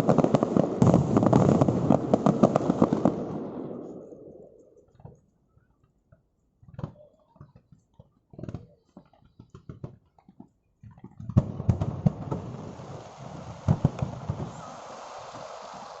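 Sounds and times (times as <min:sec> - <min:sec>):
fireworks booming: 0:00.0 - 0:05.0, 0:11.0 - 0:16.0
fireworks crackling: 0:00.0 - 0:05.0, 0:11.0 - 0:16.0.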